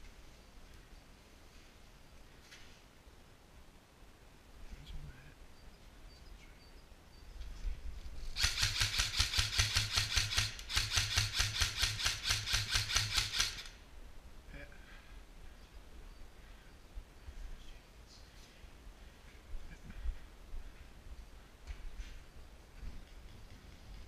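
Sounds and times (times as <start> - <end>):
airsoft gun shots: 8.4 - 13.8.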